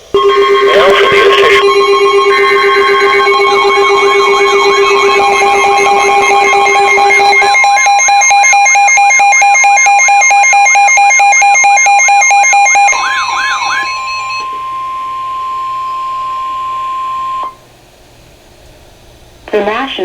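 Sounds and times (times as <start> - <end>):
steady alarm tone: 0.0 - 17.8
pulsing alert tone: 0.2 - 9.4
sweeping warble tone: 0.2 - 9.4, 11.4 - 17.6.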